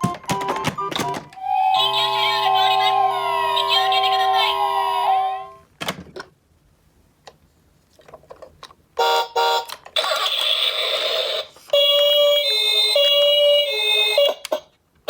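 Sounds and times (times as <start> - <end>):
two-tone toy siren: 0.3 - 5.6, 11.7 - 14.6.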